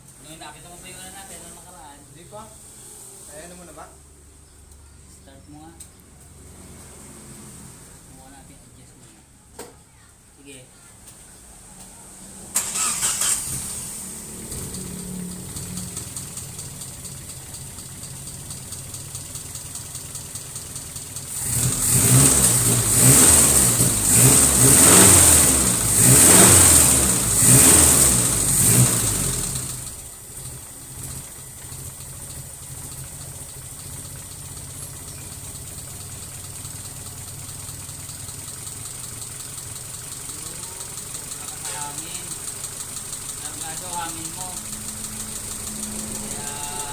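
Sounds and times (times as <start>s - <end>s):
car engine idling and revving: 0.0s - 8.6s, 11.1s - 46.9s.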